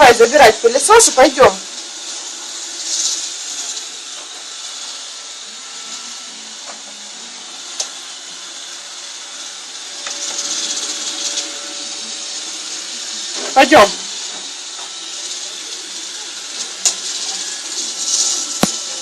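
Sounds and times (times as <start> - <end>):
robot vacuum cleaner whirring: 0.0 - 19.0.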